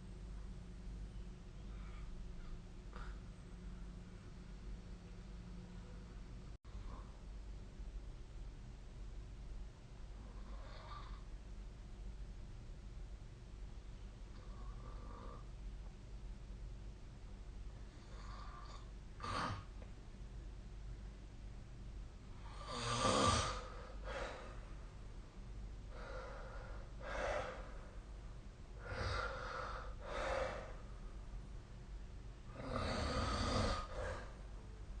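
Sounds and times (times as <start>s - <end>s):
low steady hum: 0.0s - 35.0s
person snoring: 22.4s - 24.3s, 32.5s - 34.3s.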